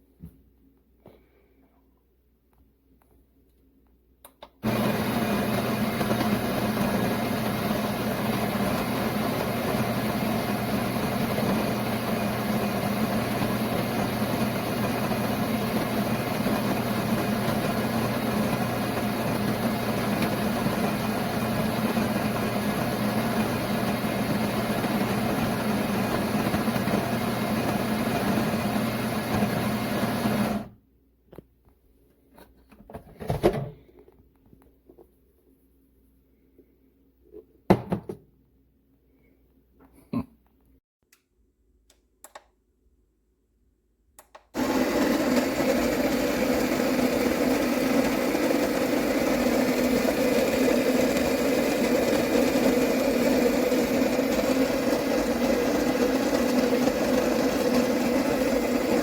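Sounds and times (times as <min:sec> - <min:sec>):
coffee grinder motor running: 0:04.6 - 0:30.7, 0:44.6 - 0:59.0.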